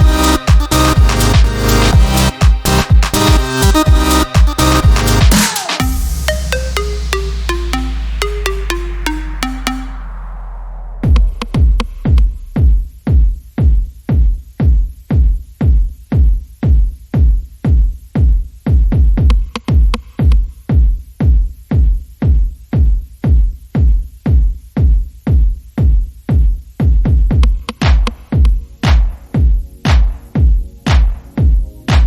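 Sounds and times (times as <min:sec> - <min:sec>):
electronic dance music: 0:00.0 - 0:13.7, 0:26.9 - 0:32.0
pounding kick drum: 0:00.0 - 0:32.0.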